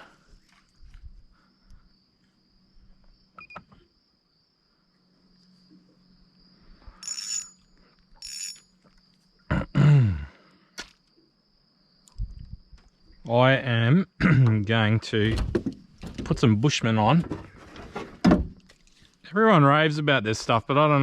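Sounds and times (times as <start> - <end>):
high insect drone: 0.0 - 15.2
fishing reel whirring: 7.0 - 7.6, 8.2 - 8.7.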